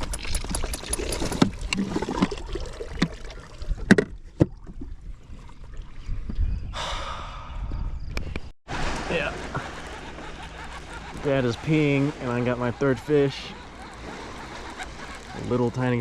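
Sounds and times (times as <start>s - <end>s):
water sloshing around boat: 0.0s - 6.4s, 8.7s - 16.0s
splash: 8.7s - 9.6s.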